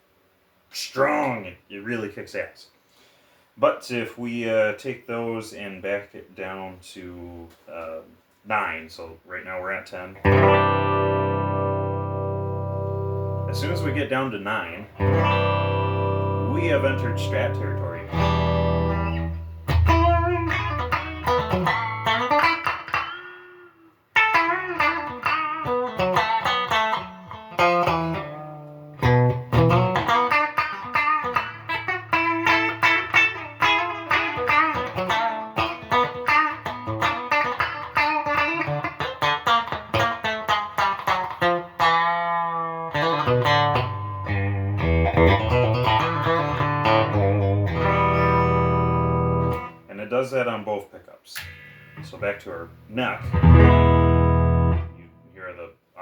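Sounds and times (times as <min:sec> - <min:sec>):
person talking: 0:00.7 - 0:02.8, 0:03.6 - 0:10.2, 0:13.5 - 0:15.4, 0:16.2 - 0:18.2, 0:49.9 - 0:53.4, 0:54.9 - 0:56.0
electric guitar playing: 0:10.2 - 0:14.1, 0:14.7 - 0:49.9, 0:53.0 - 0:55.3.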